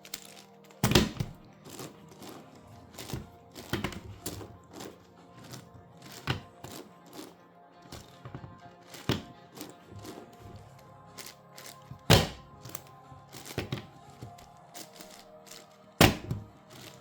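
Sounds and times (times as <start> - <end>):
faint background music: 0.0 - 17.0
plastic puzzle cube clacks: 0.0 - 17.0.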